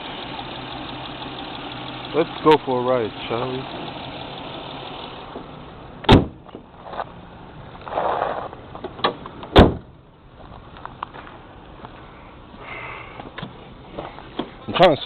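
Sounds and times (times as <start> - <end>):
car engine idling faintly: 0.0 - 14.8
car hood and door slamming: 6.0 - 6.7, 8.8 - 10.0.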